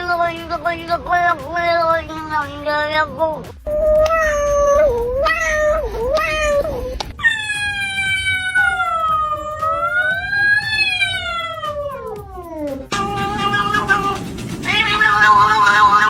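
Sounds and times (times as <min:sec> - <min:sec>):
cat yowling: 0:00.2 - 0:14.1.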